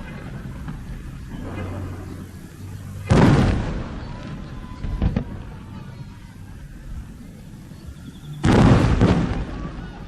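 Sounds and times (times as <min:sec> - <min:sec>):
firework sharp bangs: 0:00.0 - 0:05.6, 0:08.4 - 0:10.0
faint firework whistle: 0:00.0 - 0:06.0, 0:07.7 - 0:10.0
firework boom: 0:00.1 - 0:05.4, 0:08.4 - 0:09.9.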